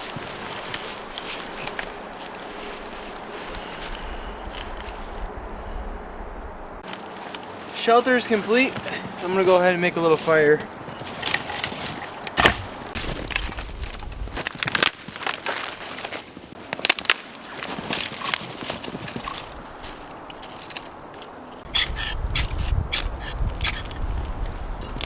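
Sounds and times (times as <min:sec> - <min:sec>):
dry sticks snapping: 0:11.0 - 0:25.0.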